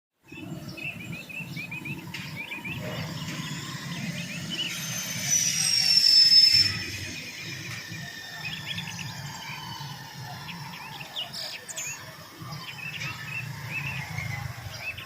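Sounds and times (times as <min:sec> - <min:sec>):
small birds chirping: 0:00.2 - 0:15.0
long high falling whistle: 0:03.3 - 0:10.7.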